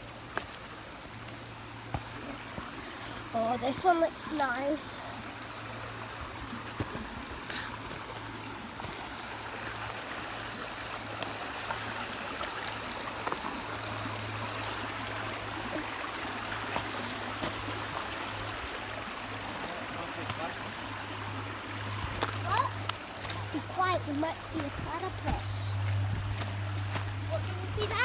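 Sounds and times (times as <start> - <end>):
creek water over rocks: 0.0 - 28.0
low steady hum: 0.0 - 28.0.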